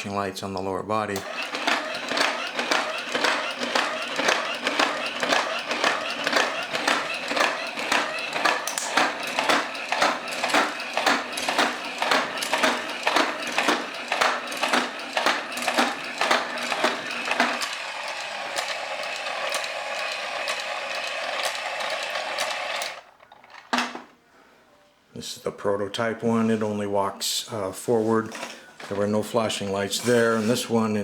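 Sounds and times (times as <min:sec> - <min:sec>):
toy motor and gearbox whirring: 0:01.2 - 0:23.0
plastic legs clacking: 0:01.2 - 0:24.2.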